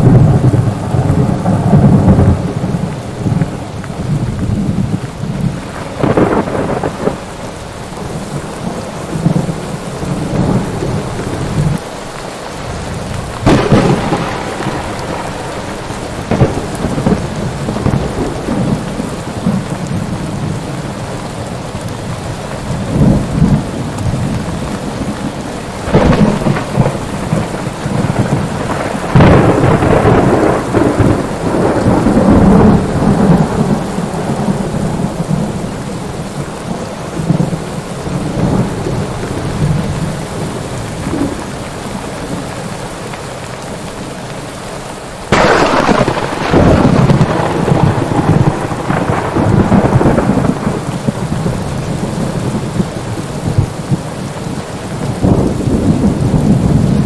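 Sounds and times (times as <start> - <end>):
rolling thunder: 0.0 - 11.8, 12.6 - 20.9, 22.7 - 36.2, 45.3 - 57.0
heavy rain: 0.0 - 57.0
sharp thunder cracks: 5.7 - 7.3, 13.2 - 19.6, 25.8 - 35.4, 45.3 - 52.2.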